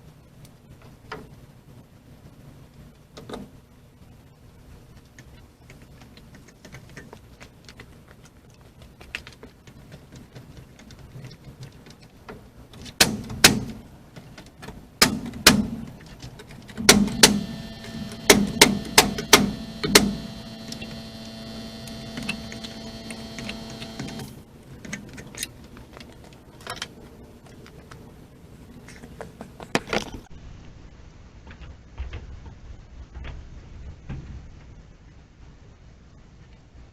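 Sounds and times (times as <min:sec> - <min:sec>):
sharp knocks on lumber: 0:13.0 - 0:13.8, 0:15.0 - 0:16.0, 0:16.8 - 0:17.5
steady ringing tone: 0:17.1 - 0:24.4.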